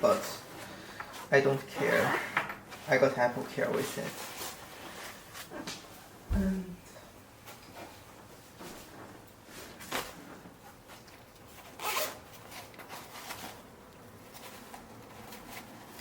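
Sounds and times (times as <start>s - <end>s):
backpack zipper rasping: 11.6s - 12.3s.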